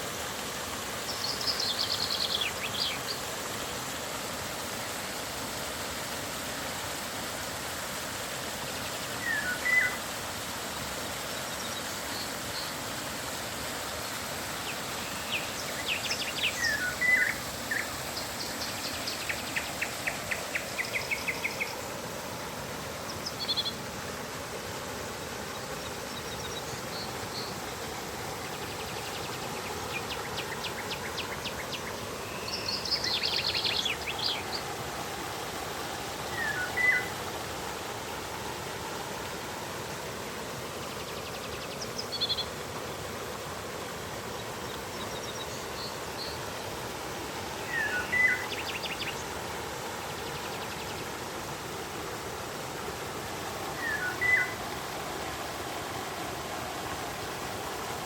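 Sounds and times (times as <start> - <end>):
river water flowing: 0.0 - 58.0
birds calling: 15.4 - 21.8, 47.6 - 49.3, 53.8 - 54.6.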